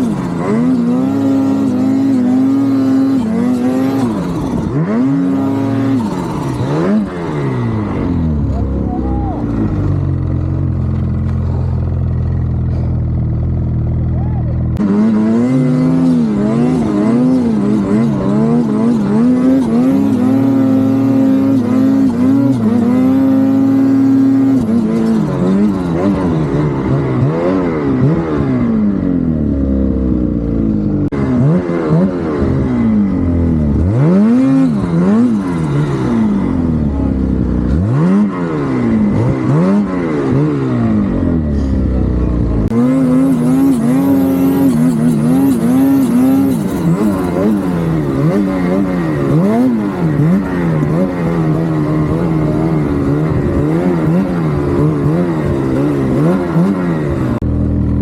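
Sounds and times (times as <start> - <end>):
turbocharged engine revving: 0.0 - 12.9, 14.7 - 58.0.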